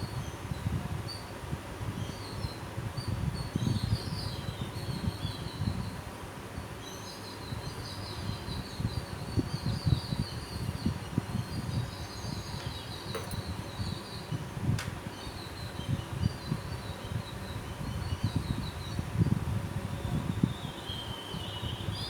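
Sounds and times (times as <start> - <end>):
small birds chirping: 6.8 - 19.3.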